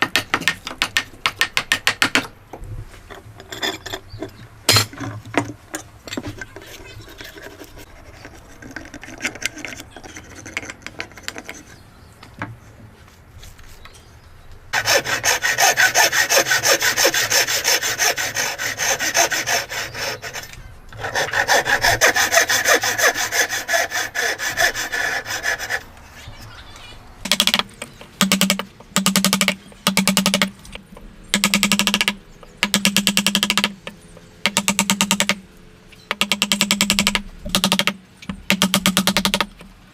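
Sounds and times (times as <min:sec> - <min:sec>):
hand saw cutting wood: 0:14.8 - 0:25.9.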